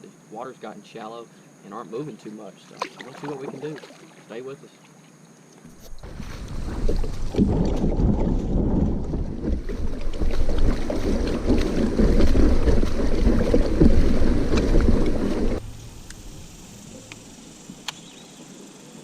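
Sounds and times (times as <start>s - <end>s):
wind buffeting microphone: 5.9s - 15.6s
faint clicks: 17.8s - 18.1s.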